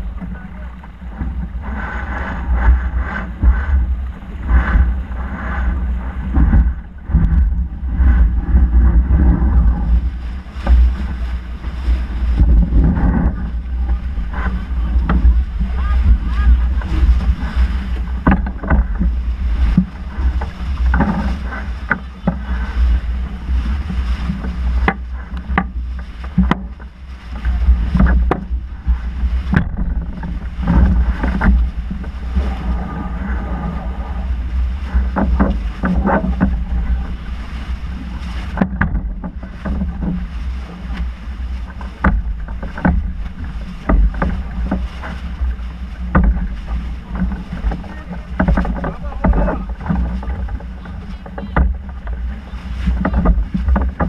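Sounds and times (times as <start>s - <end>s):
water rushing: 0.0s - 54.0s
wind rumbling on microphone: 0.0s - 54.0s
sharp knocks and clicks: 18.0s - 19.1s, 24.8s - 26.7s, 38.6s - 40.2s, 41.8s - 44.8s, 46.1s - 54.0s.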